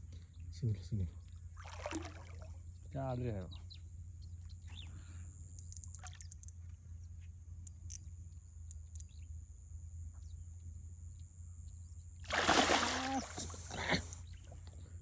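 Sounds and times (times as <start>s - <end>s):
faint bird chirps: 2.7s - 9.4s, 12.7s - 15.0s
soft ticks: 5.5s - 6.7s.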